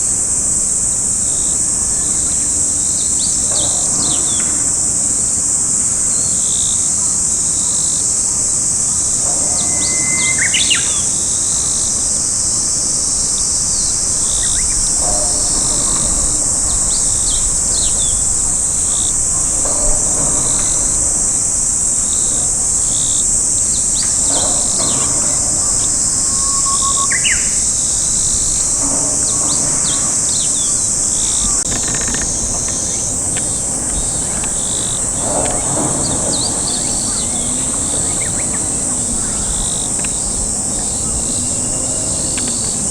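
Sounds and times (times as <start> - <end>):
insects droning: 0.0 - 42.9.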